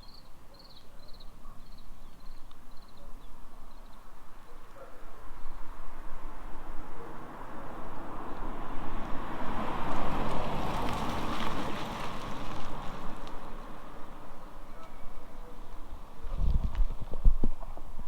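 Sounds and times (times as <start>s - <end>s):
car passing by: 5.9s - 14.7s.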